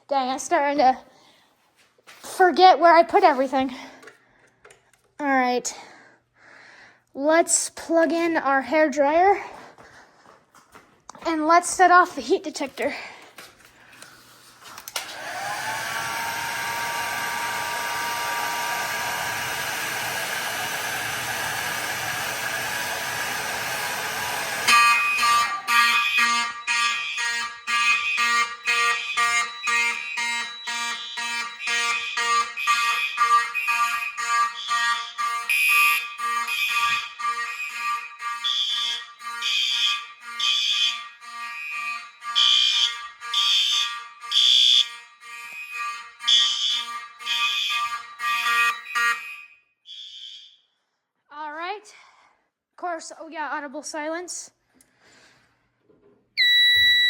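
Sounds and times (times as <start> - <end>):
hair dryer running: 14.8 - 25.7
fire alarm pulsing over tone: 24.7 - 45.5, 46.2 - 50.5, 56.4 - 57.0.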